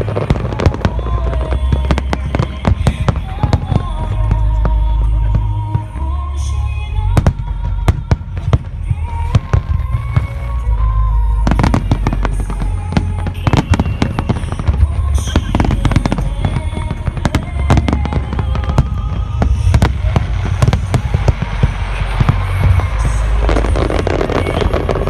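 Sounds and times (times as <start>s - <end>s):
deep firework booms: 0.0s - 25.0s
firework crackle: 0.0s - 25.0s
music playing: 0.0s - 25.0s
firework shells bursting: 11.4s - 25.0s.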